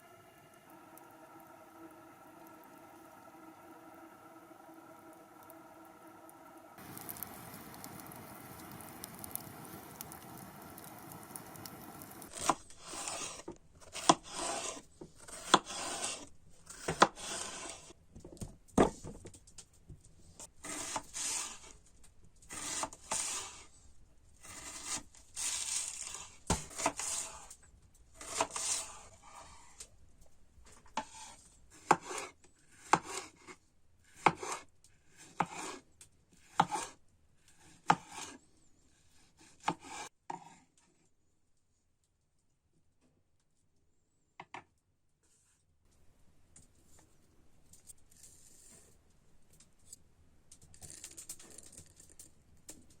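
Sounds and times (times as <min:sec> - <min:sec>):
hand tool rasping wood: 0:12.2 - 0:17.9, 0:20.6 - 0:21.7, 0:24.4 - 0:27.4, 0:28.2 - 0:29.0, 0:31.0 - 0:33.4, 0:34.1 - 0:35.8, 0:36.4 - 0:37.0, 0:39.5 - 0:40.1.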